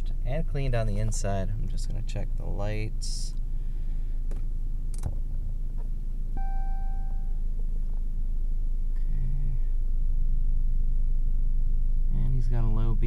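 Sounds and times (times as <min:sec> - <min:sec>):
car engine idling: 0:00.0 - 0:13.0
sharp click: 0:04.3 - 0:05.2
electronic chime beep: 0:06.4 - 0:07.3.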